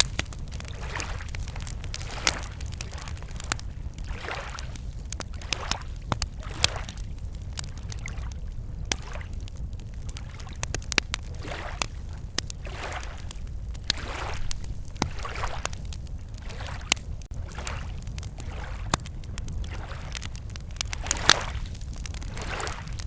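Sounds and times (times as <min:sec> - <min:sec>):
campfire crackling and popping: 0:00.0 - 0:23.0
waves lapping against shore: 0:00.0 - 0:23.0
steady low rumble: 0:17.0 - 0:23.0.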